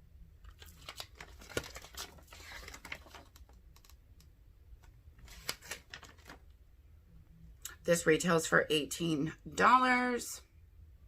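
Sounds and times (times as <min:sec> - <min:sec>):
packaging clicks and crinkles: 0:00.5 - 0:04.0.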